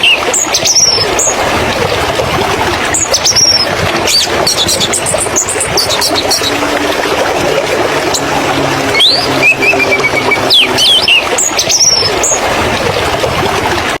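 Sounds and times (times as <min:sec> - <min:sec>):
loud steady rushing noise: 0:01.0 - 0:14.0
small birds chirping: 0:08.9 - 0:12.4.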